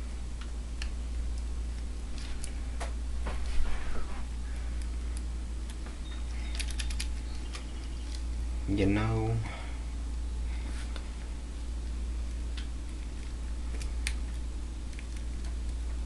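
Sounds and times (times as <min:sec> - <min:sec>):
low hum: 0:00.0 - 0:16.0.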